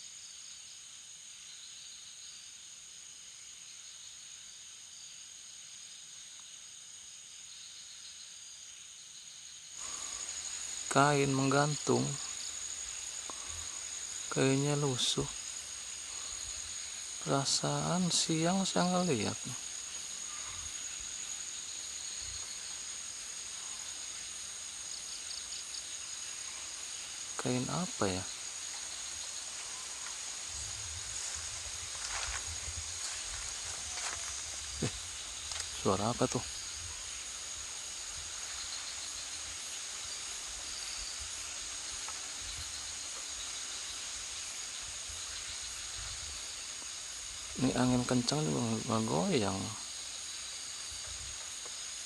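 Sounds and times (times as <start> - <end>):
night insect chorus: 0.0 - 52.0
hiss: 9.7 - 52.0
wind buffeting microphone: 30.4 - 35.1.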